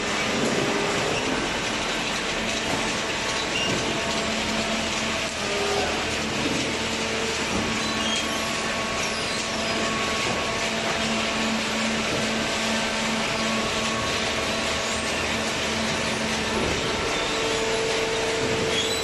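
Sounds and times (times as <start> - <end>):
baler machine running: 0.0 - 19.0.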